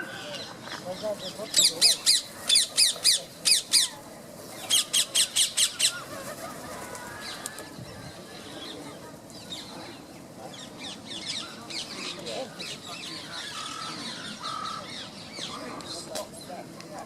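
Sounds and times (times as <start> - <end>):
parakeets chattering: 0.0 - 7.4, 9.4 - 16.1
parakeets screeching: 10.6 - 15.8.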